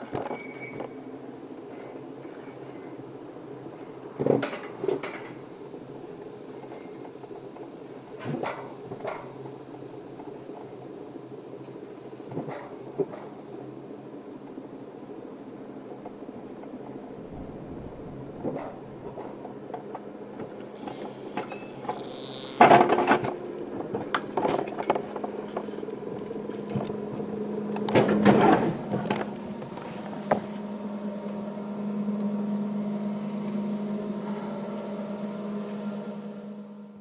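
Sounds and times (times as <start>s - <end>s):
steady mechanical hum: 0.0s - 37.0s.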